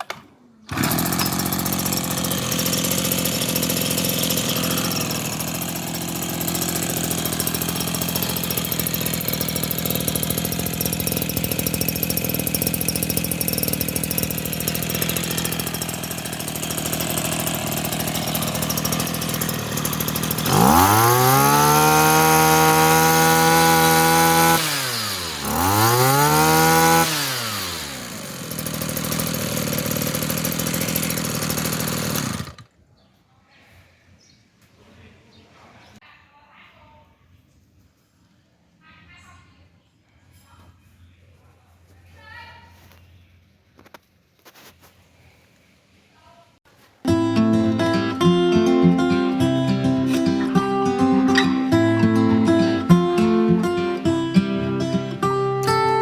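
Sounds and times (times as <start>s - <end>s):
grass cutter engine revving: 0.0s - 32.7s, 47.1s - 56.0s.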